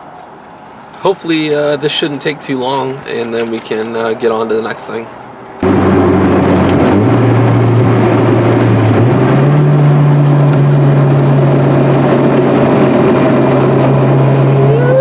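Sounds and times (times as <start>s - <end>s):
engine droning: 5.6s - 15.0s
heavy rushing noise: 5.6s - 15.0s.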